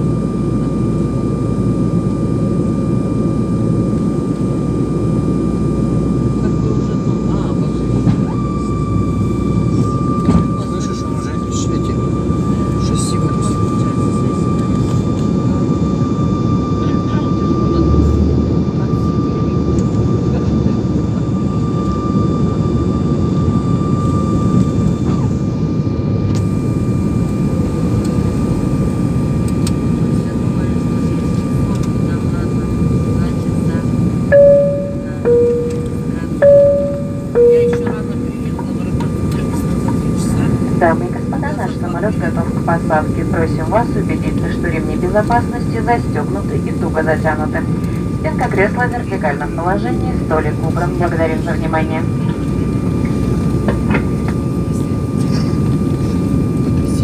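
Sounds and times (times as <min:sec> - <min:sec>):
thin steady whine: 0:00.0 - 0:25.6, 0:26.2 - 0:57.0
airliner cabin rumble: 0:00.0 - 0:57.0.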